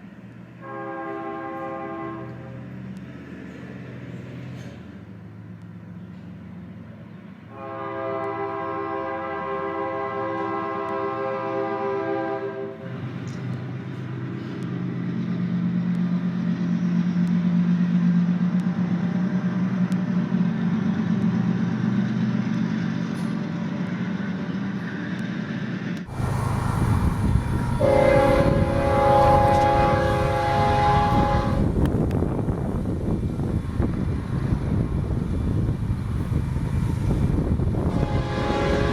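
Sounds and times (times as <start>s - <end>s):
train rumbling past: 0.0s - 38.9s
train horn: 0.6s - 2.8s, 7.5s - 13.0s, 26.1s - 32.0s, 37.8s - 38.9s
wind on microphone: 26.1s - 38.9s.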